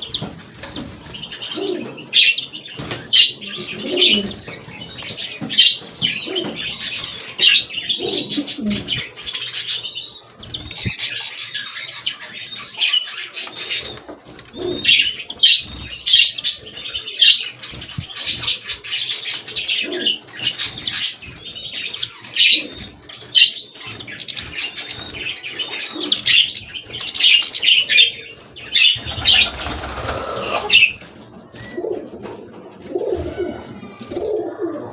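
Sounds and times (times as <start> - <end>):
finches twittering: 0.0 - 31.0.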